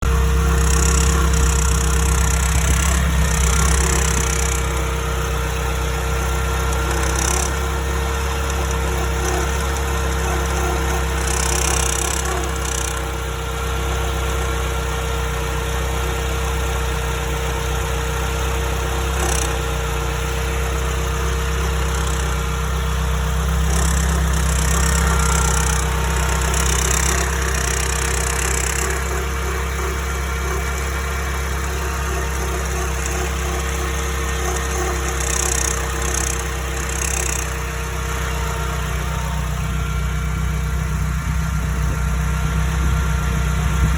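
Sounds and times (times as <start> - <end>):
metallic rattle: 0.0 - 13.4, 19.0 - 40.0
car engine idling: 0.0 - 43.9.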